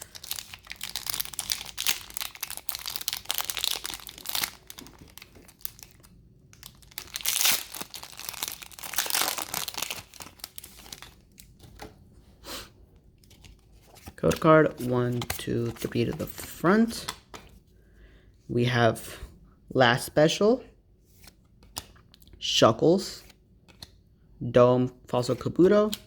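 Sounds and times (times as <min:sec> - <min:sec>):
foil wrapper tearing and crinkling: 0:00.0 - 0:11.2.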